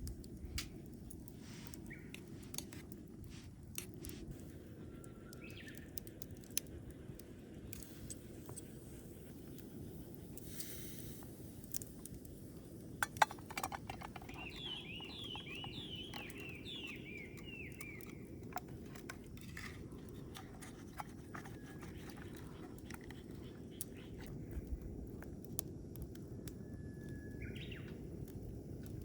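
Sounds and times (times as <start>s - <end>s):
small bird singing: 1.7s - 2.2s, 4.9s - 6.1s, 13.4s - 18.5s, 19.9s - 24.7s, 27.1s - 28.0s.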